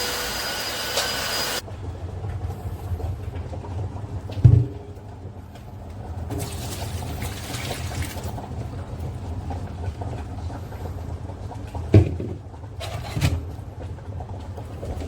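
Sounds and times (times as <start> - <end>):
vacuum mop motor hum: 0.0 - 1.6.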